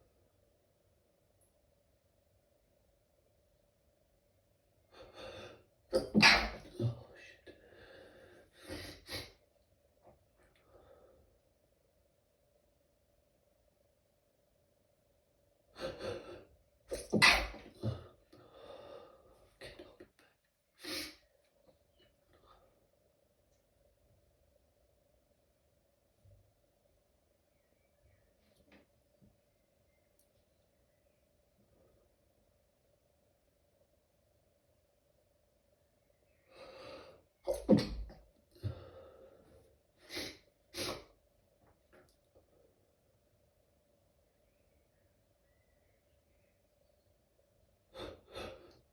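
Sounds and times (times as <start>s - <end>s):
person stifling sneezes: 5.9s - 7.3s, 15.8s - 18.1s, 20.8s - 21.2s, 37.5s - 38.8s, 40.0s - 41.1s
breathy breathing: 7.2s - 9.3s, 17.9s - 20.0s.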